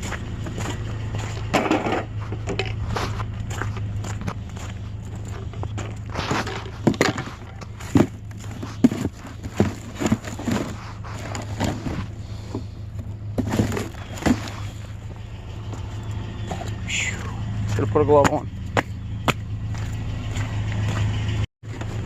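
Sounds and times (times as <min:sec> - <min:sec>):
junk knocking and clattering: 0:00.0 - 0:17.0
steady low hum: 0:00.0 - 0:21.9.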